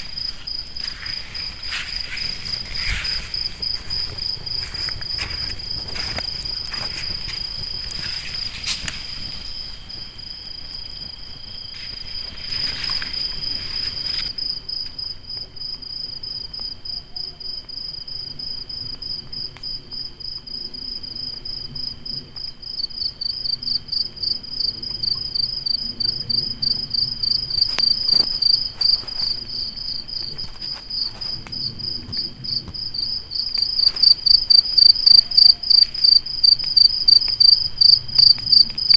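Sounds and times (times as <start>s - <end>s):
crickets trilling: 0.0s - 38.9s
faint campfire crackles: 0.0s - 38.9s.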